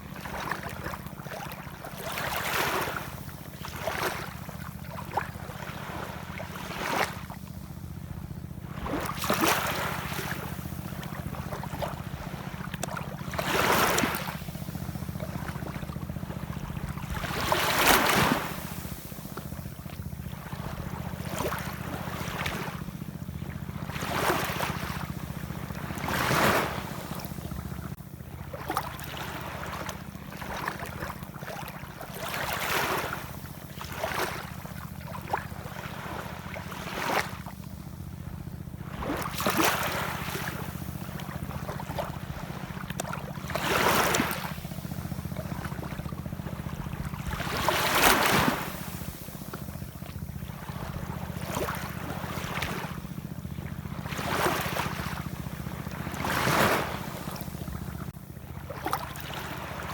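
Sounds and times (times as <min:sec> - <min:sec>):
ocean waves washing in: 0:08.6 - 0:28.0, 0:38.8 - 0:59.9.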